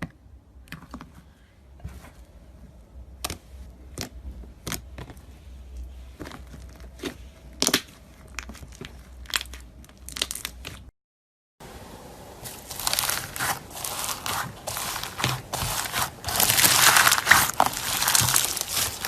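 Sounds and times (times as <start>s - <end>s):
crunchy material crushed by hand: 6.3s - 10.9s, 12.5s - 19.0s.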